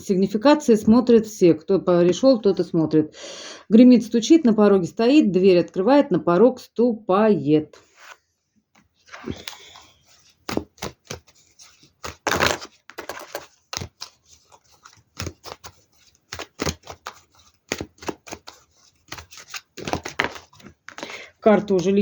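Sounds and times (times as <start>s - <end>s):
cards being shuffled: 8.8s - 22.0s.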